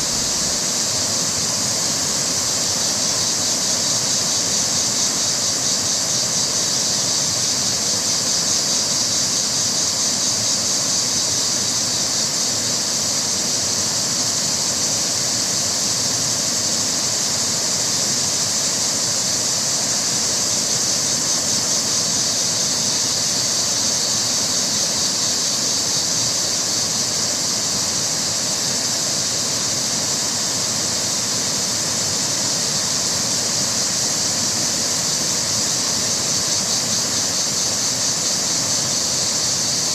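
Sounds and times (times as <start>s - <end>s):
river water rushing over rocks: 0.0s - 2.7s.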